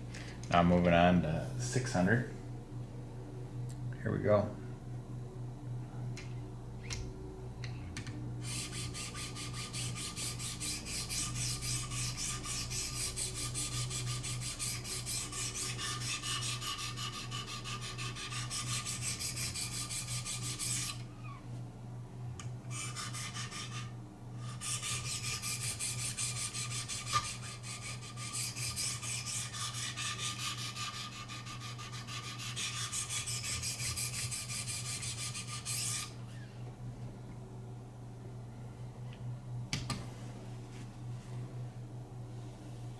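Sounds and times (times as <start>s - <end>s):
knife rasping on sharpening stone: 8.5s - 21.0s, 24.5s - 36.2s.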